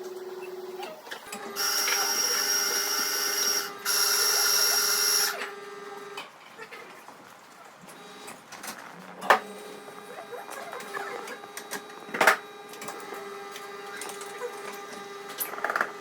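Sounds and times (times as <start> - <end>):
espresso machine pump humming: 0.0 - 6.2
clatter of barista equipment: 7.9 - 16.0.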